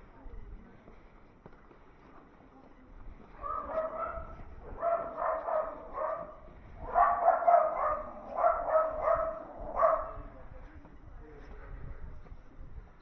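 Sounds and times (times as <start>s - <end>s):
dog barking: 3.4s - 10.3s.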